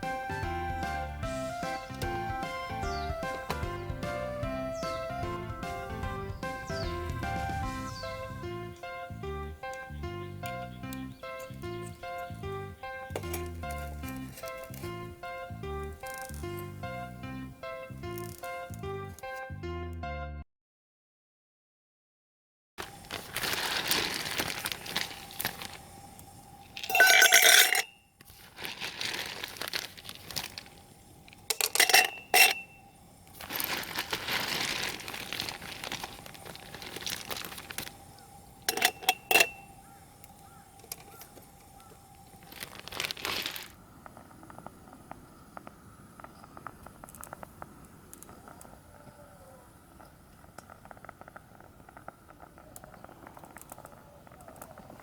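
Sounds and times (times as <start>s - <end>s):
rustling and crinkling handling: 11.4s - 15.2s, 22.8s - 45.7s
faint steady tone: 30.3s - 42.8s.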